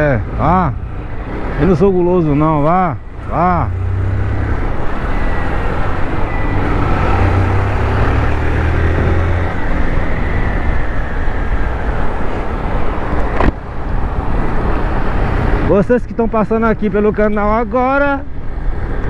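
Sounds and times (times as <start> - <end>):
motorcycle engine humming: 0.0 - 15.6
wind and road noise: 0.0 - 19.0.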